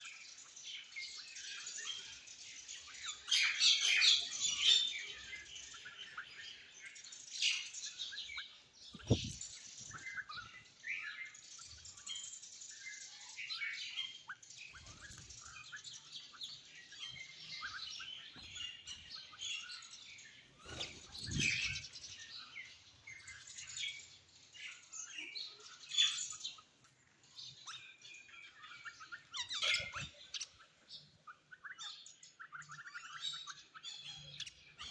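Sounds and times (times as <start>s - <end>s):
small birds chirping: 0.0s - 34.9s
low thuds: 9.0s - 9.4s.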